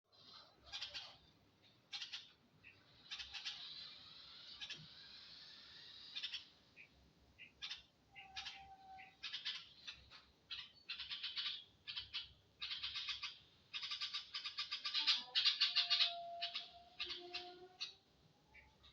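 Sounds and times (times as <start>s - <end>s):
baby birds chirping: 0.2s - 18.9s.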